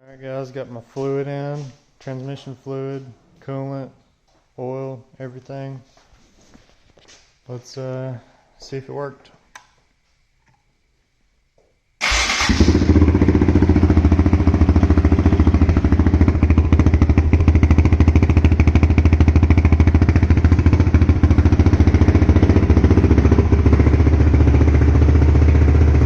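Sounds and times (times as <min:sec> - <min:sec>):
electric starter cranking: 0:12.0 - 0:13.0
engine running: 0:12.0 - 0:26.0.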